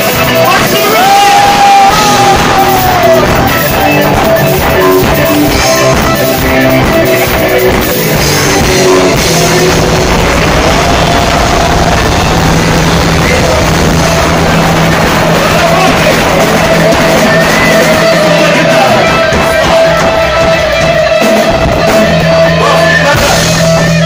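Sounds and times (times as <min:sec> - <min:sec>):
distorted electric guitar: 0:00.0 - 0:24.0
loud rock music: 0:00.0 - 0:24.0.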